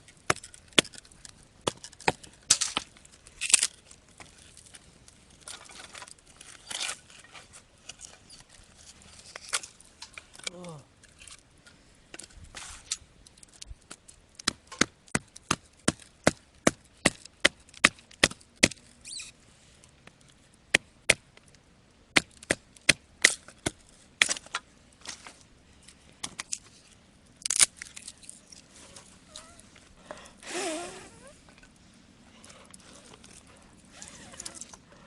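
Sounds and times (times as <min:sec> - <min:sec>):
firewood being chopped: 0:00.1 - 0:04.3, 0:13.8 - 0:18.8, 0:20.0 - 0:21.5, 0:22.2 - 0:25.2.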